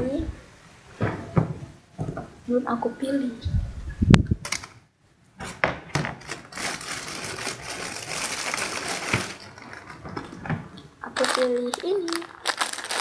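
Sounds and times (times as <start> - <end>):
crinkling handling noise: 6.1 - 13.0.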